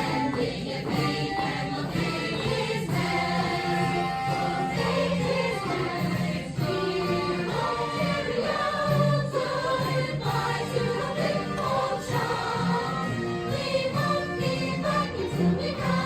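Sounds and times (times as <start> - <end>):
instrumental accompaniment: 0.0 - 16.0
musical theatre chorus singing: 0.0 - 16.0.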